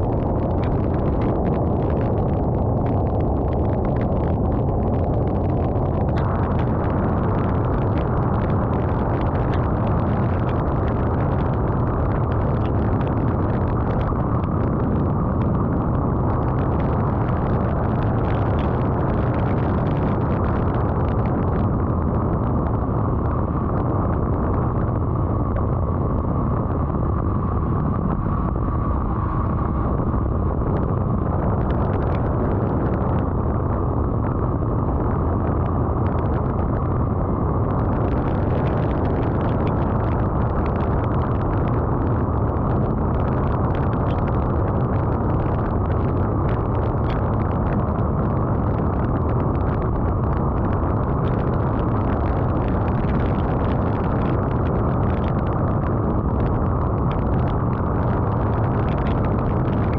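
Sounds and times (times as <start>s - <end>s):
road and wind noise: 0.0s - 59.9s.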